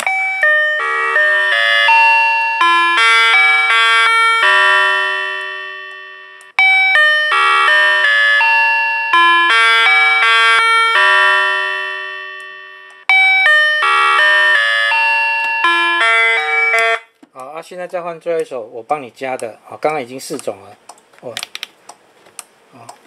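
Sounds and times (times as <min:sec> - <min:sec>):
vehicle reversing chime melody: 0:00.0 - 0:17.1.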